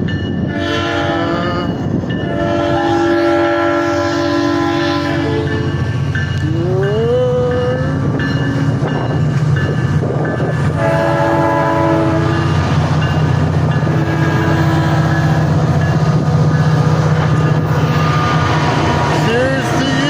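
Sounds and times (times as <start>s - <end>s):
train cars rumbling past: 0.0s - 20.0s
locomotive horn blast: 0.5s - 5.8s, 10.7s - 12.7s, 13.8s - 15.6s, 17.4s - 19.8s.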